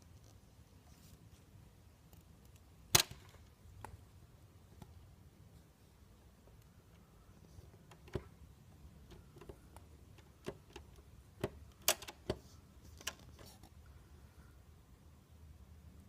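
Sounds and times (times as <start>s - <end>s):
typewriter mechanism clicking: 10.4s - 12.4s.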